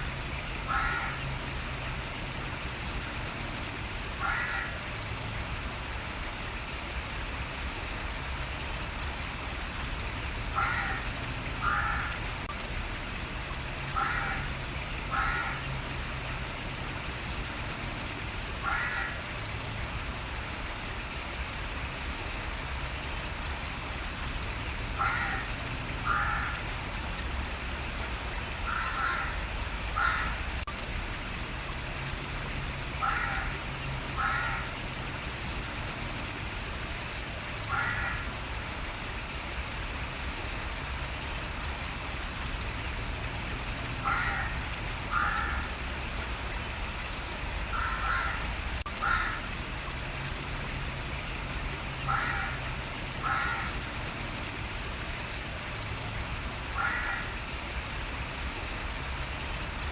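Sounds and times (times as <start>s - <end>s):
running water rushing: 0.0s - 59.9s
bird calling: 0.7s - 1.2s, 4.2s - 4.8s, 10.5s - 12.2s, 18.6s - 19.2s, 24.9s - 26.6s, 28.6s - 30.4s, 44.0s - 45.7s, 47.7s - 49.4s, 53.2s - 53.8s, 56.8s - 57.4s.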